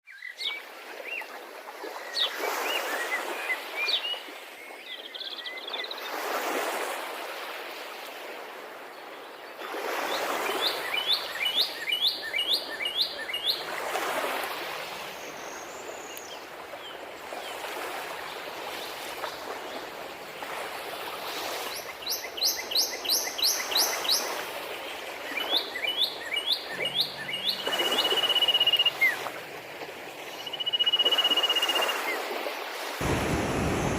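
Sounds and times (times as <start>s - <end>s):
rushing water: 0.2s - 33.9s
birds calling short high notes: 26.2s - 29.3s.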